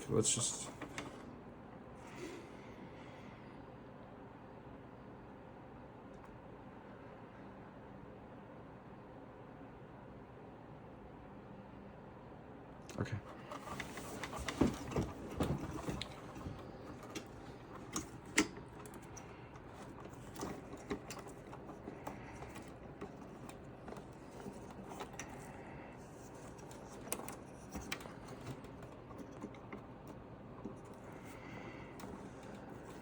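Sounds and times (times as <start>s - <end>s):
plastic and metal parts knocking: 13.3s - 33.0s.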